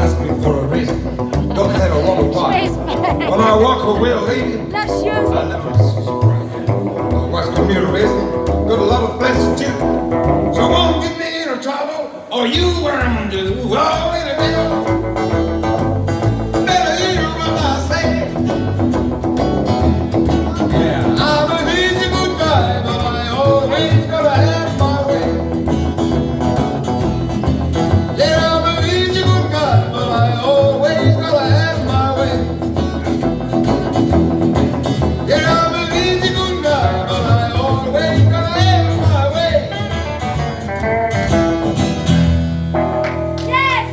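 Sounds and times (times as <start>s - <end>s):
steady bass beat: 0.0s - 11.0s
guitar: 0.0s - 43.9s
person singing: 1.3s - 9.8s, 20.4s - 25.6s.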